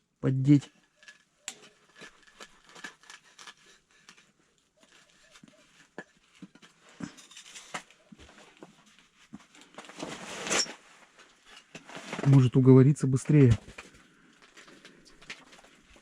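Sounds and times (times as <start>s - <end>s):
rustle: 1.0s - 12.5s.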